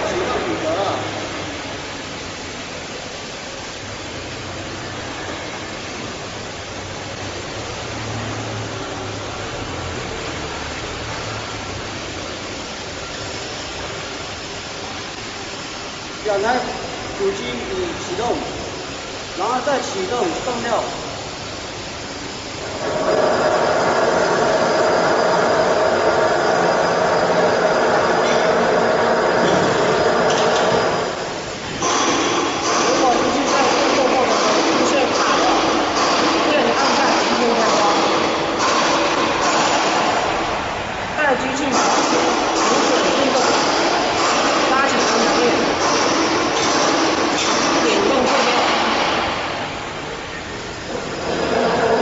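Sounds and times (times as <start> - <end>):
rip saw running: 31.8 - 40.4, 41.6 - 49.3.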